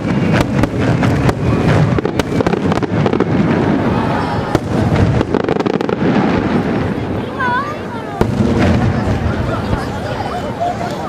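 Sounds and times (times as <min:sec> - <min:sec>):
fireworks bangs and crackles: 0:00.0 - 0:11.0.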